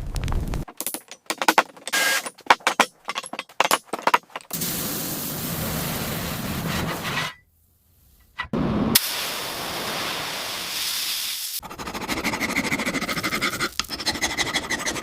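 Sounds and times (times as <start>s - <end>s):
sharp metallic clanks: 0.7s - 4.5s
sandblaster hissing: 4.5s - 7.3s, 9.0s - 11.6s.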